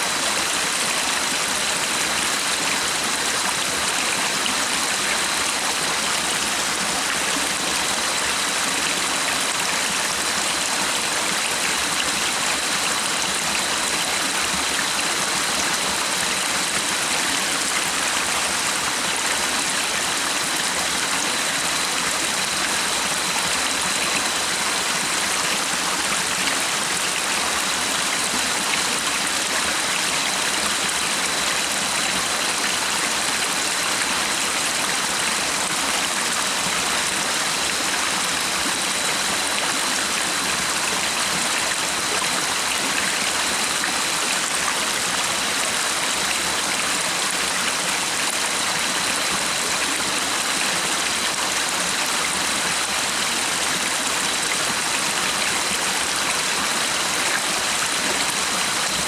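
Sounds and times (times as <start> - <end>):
stream water babbling: 0.0 - 59.0.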